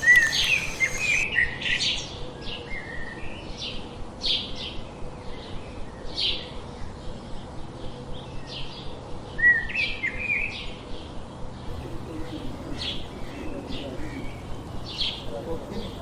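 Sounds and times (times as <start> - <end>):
bird call with gliding notes: 0.0 - 1.2, 11.7 - 16.0
birds chirping: 0.0 - 1.2, 11.7 - 16.0.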